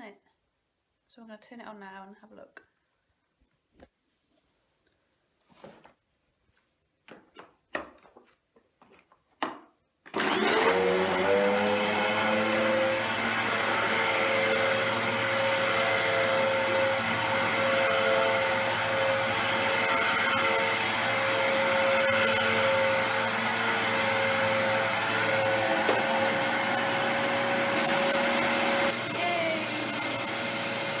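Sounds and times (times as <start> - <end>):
vacuum cleaner motor running: 10.1 - 31.0.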